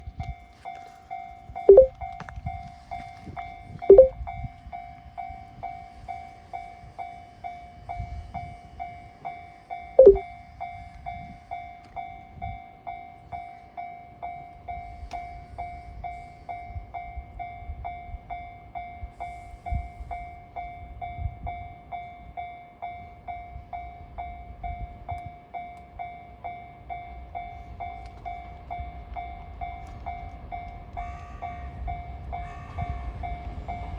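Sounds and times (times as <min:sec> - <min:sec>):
level-crossing bell ringing: 0:01.7 - 0:01.9, 0:03.9 - 0:04.2, 0:10.0 - 0:10.2
train rumbling: 0:23.1 - 0:33.9.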